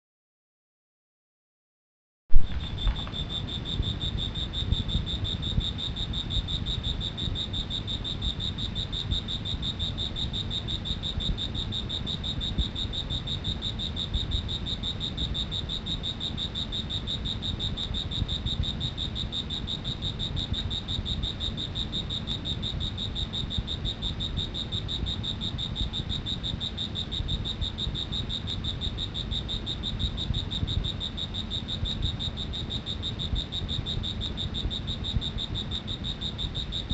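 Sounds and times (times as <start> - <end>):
cricket trilling: 2.3 - 36.9
sharp click: 2.4 - 3.2.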